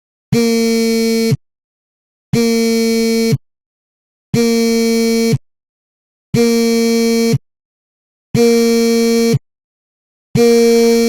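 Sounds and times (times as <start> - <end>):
phone vibrating on a table: 0.3 - 1.4, 2.4 - 3.4, 4.4 - 5.4, 6.4 - 7.4, 8.4 - 9.4, 10.4 - 11.0.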